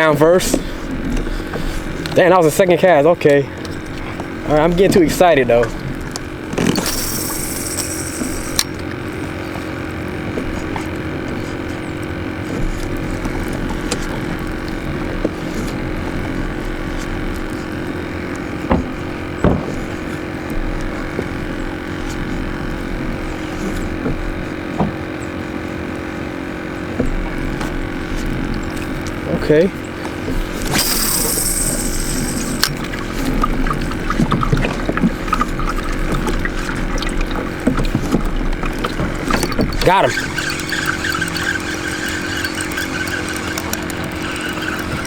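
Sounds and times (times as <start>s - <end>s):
engine humming: 0.5s - 45.0s
short hiss: 30.7s - 32.6s.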